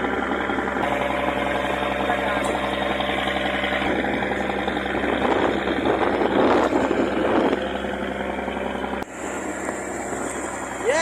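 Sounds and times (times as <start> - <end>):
boat engine running: 0.0 - 11.0
rushing wind and water: 3.0 - 11.0.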